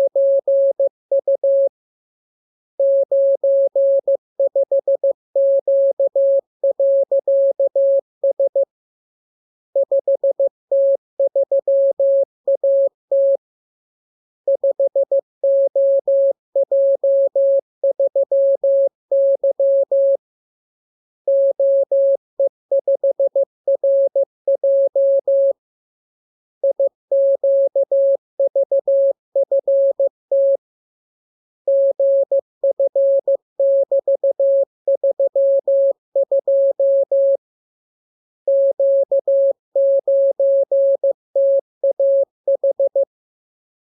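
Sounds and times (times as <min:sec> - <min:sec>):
morse code beeps: 0:31.7 - 0:37.4, 0:38.5 - 0:43.0.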